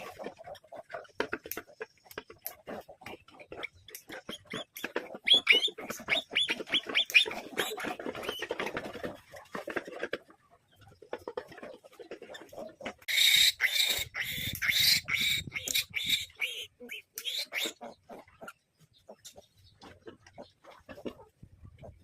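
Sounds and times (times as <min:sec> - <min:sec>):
piglets squealing: 0:04.4 - 0:07.9, 0:13.1 - 0:18.0.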